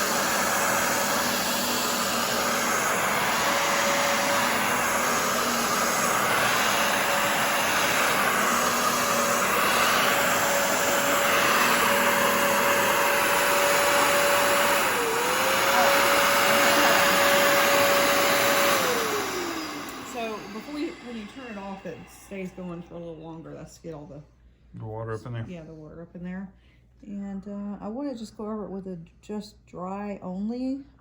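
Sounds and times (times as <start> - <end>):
carpet cleaner motor whine: 0.0 - 23.4.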